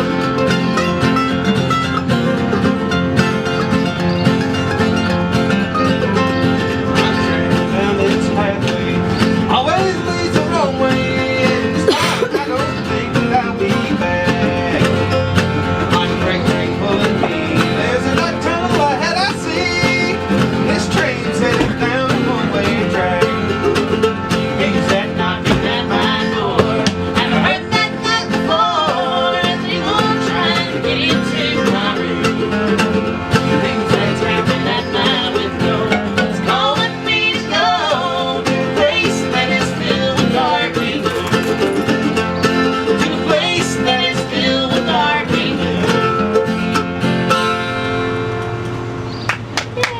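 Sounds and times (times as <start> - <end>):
acoustic bluegrass music: 0.0 - 49.9.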